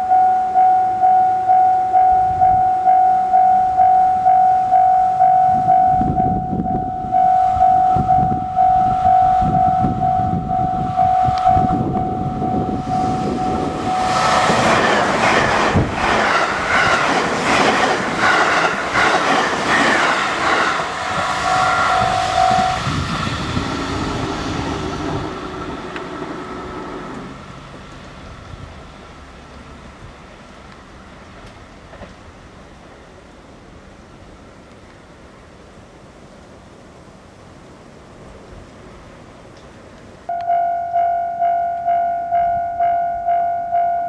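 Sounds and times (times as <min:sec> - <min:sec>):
level-crossing bell dinging: 0:00.0 - 0:14.2, 0:21.5 - 0:22.8, 0:40.3 - 0:44.0
train wheels clattering over rail joints: 0:14.0 - 0:21.0.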